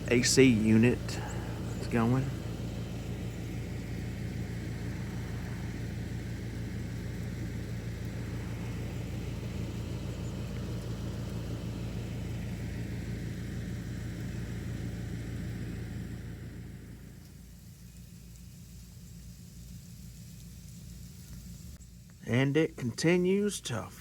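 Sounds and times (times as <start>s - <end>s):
air conditioner humming: 0.0s - 24.0s.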